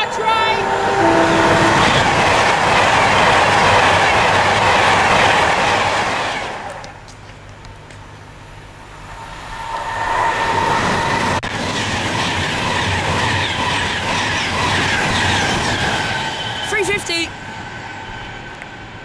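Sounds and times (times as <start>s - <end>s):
high-pitched wheel and brake squeal: 0.0s - 2.9s
electric train running: 0.0s - 7.0s, 8.4s - 19.0s.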